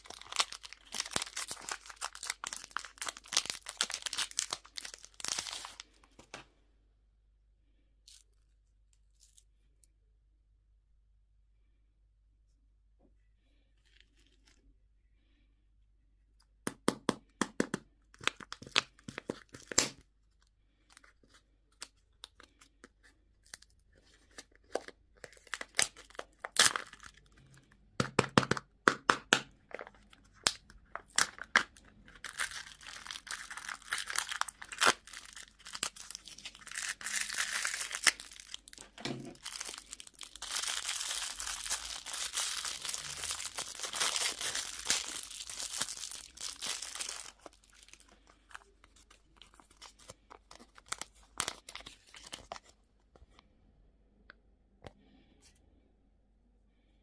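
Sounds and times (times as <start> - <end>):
candy packaging crinkling: 0.0 - 6.3, 17.5 - 53.4.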